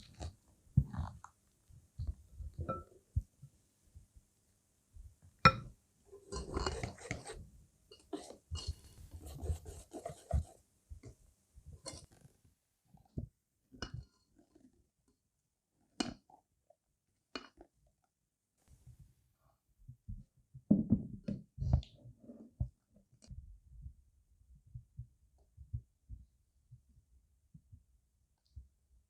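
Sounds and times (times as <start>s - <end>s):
scraping or rustling: 6.2s - 10.6s.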